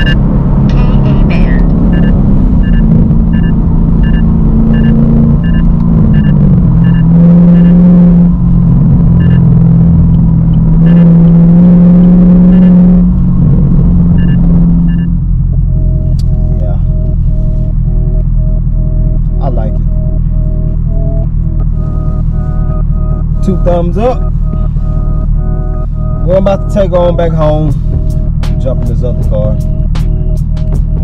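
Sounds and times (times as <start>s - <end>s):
car engine droning: 0.0s - 31.0s.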